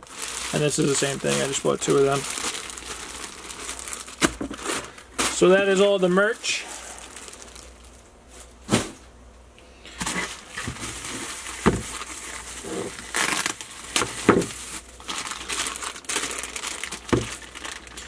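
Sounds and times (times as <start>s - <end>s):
plastic packaging crinkling: 0.0s - 8.7s, 10.0s - 18.0s.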